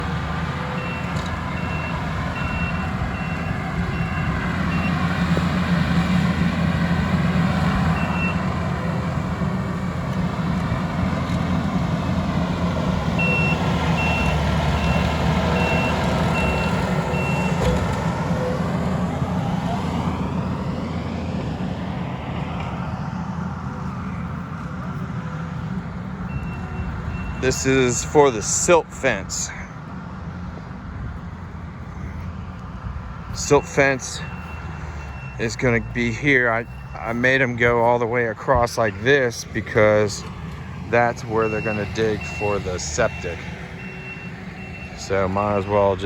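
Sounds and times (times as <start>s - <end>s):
diesel engine running: 0.0s - 46.0s
backup alarm beeping: 0.7s - 5.0s, 7.9s - 8.5s, 13.2s - 17.8s, 26.2s - 27.5s, 33.4s - 37.3s, 41.3s - 46.0s.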